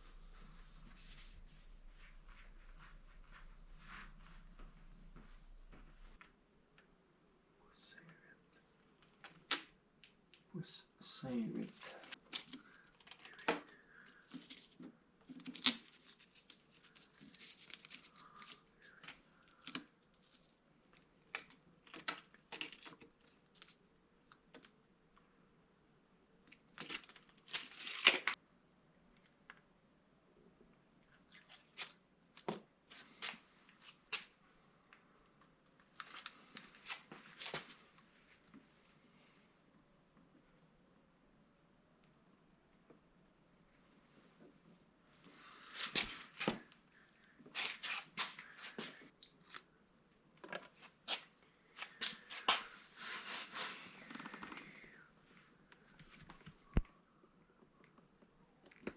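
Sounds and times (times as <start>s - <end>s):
material tearing and crinkling: 15.3s - 18.6s, 26.7s - 28.4s, 47.5s - 48.8s.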